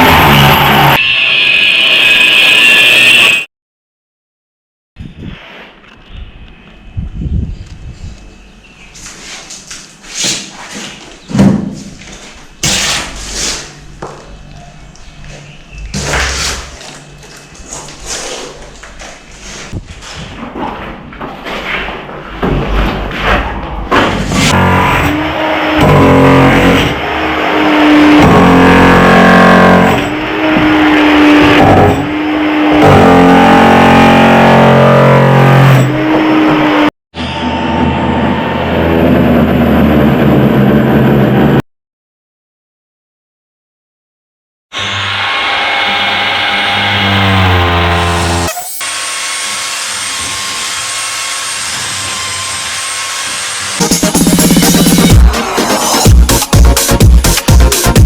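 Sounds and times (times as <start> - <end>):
buzzing held chords music: 53.8 - 58.0.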